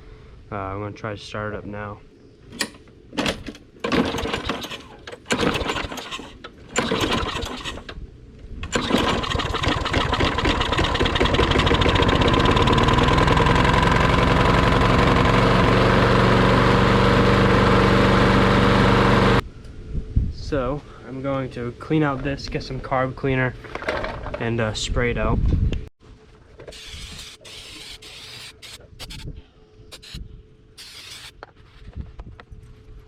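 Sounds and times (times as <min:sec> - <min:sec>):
recoil starter pulls: 0:02.6 - 0:08.0, 0:08.6 - 0:19.4
lawn mower engine running: 0:03.8 - 0:07.9, 0:08.6 - 0:19.4, 0:26.7 - 0:29.2.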